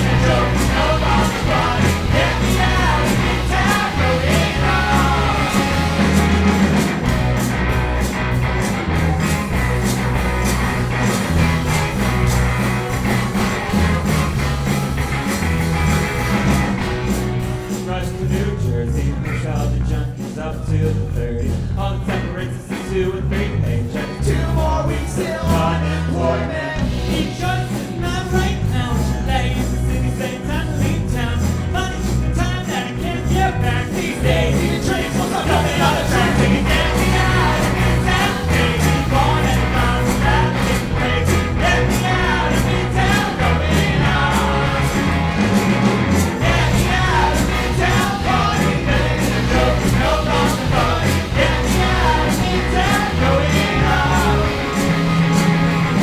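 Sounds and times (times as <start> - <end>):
live ska band playing: 0.0 - 56.0.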